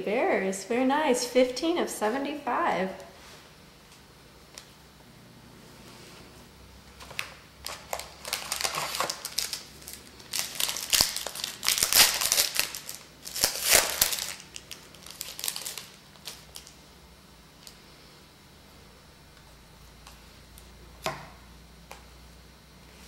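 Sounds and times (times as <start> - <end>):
wrapper crinkling: 7.1 - 16.8.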